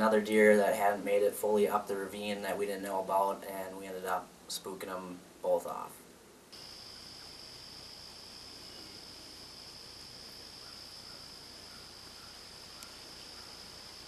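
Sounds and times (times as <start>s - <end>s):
crickets trilling: 6.6s - 14.0s
faint click: 12.8s - 13.0s.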